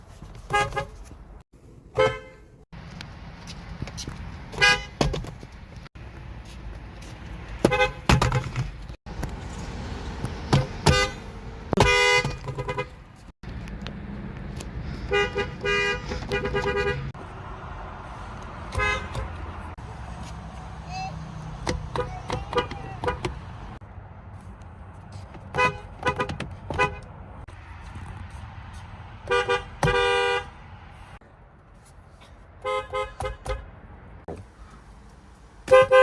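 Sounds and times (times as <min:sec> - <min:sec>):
car horns honking: 0:00.4 - 0:01.1, 0:01.9 - 0:02.6, 0:04.5 - 0:05.1, 0:07.6 - 0:08.7, 0:10.6 - 0:13.0, 0:15.0 - 0:17.2, 0:18.6 - 0:19.8, 0:21.7 - 0:23.5, 0:25.5 - 0:27.2, 0:29.2 - 0:30.6, 0:32.6 - 0:33.7, 0:35.6 - 0:36.0.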